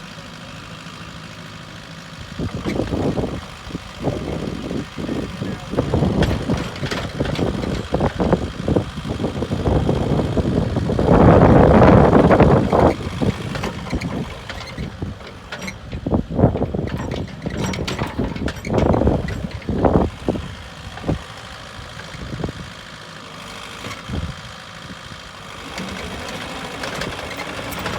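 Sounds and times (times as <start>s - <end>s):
excavator diesel engine running: 0.0s - 27.9s
sharp engine knocks: 2.5s - 10.1s, 10.8s - 21.2s.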